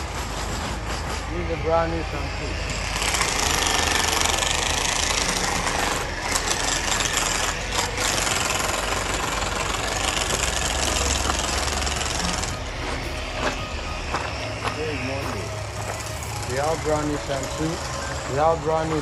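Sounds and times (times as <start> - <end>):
diesel engine rumbling: 0.0 - 19.0.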